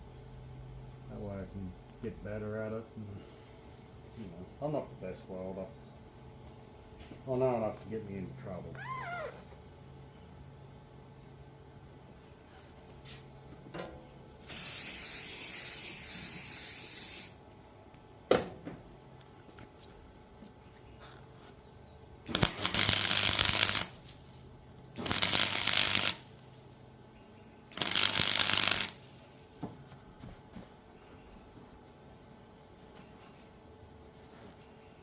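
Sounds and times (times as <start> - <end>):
welder arc noise bursts: 14.4 - 17.4, 22.2 - 24.2, 25.0 - 26.5, 27.7 - 29.2.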